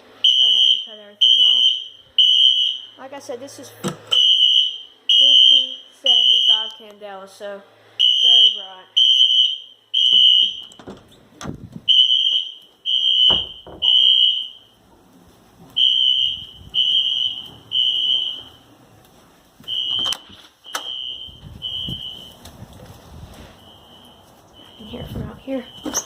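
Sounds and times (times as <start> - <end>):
fire alarm horn beeping: 0.2 - 3.0, 4.1 - 6.8, 8.0 - 10.8, 11.9 - 14.8, 15.8 - 18.7, 19.6 - 22.4, 23.5 - 26.0
sharp knocks: 13.3 - 14.0.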